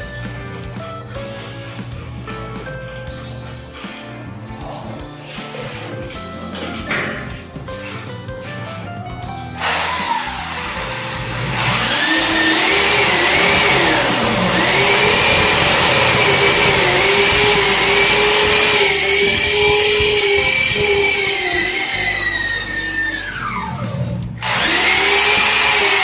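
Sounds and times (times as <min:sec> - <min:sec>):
power tool motor whining: 0:09.6 - 0:26.0.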